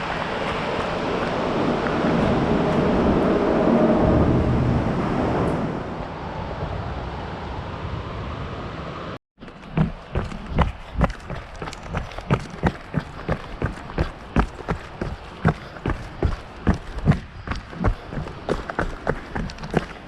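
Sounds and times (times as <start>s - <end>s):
running footsteps on a trail: 0.0s - 3.1s, 9.4s - 20.0s
car road and wind noise: 0.0s - 20.0s.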